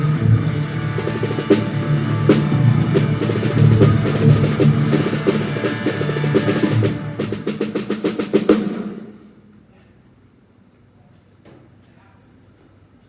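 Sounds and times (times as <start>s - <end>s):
band playing: 0.4s - 9.2s
drum kit hitting: 0.5s - 9.3s.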